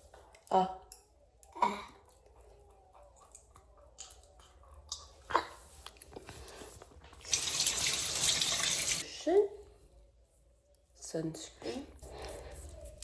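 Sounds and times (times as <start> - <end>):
water running into sink: 7.2 - 9.0.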